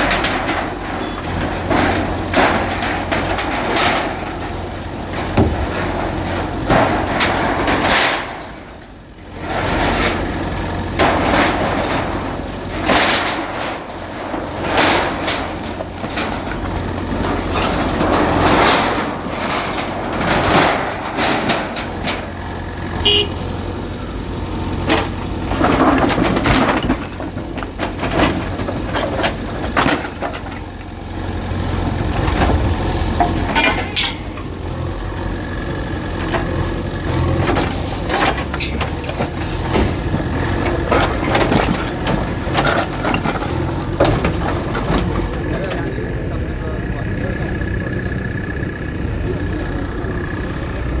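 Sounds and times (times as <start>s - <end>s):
structure cracking and knocking: 0.0s - 8.7s, 24.6s - 47.2s
bulldozer engine running: 0.0s - 51.0s.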